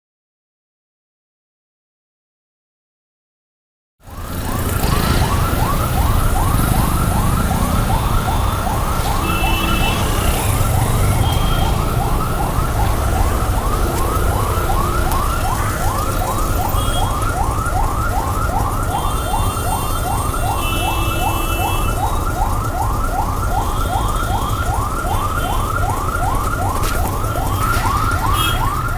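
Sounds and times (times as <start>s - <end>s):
heavy traffic rumble: 4.0s - 28.9s
ambulance siren yelping: 4.1s - 28.9s
vehicle horns honking: 9.2s - 11.8s, 16.7s - 17.1s, 20.6s - 22.0s, 27.5s - 28.7s.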